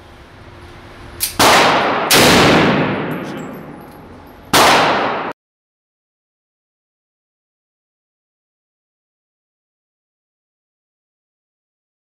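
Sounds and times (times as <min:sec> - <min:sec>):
rifle shots with echo: 0:01.4 - 0:03.9, 0:04.5 - 0:05.4.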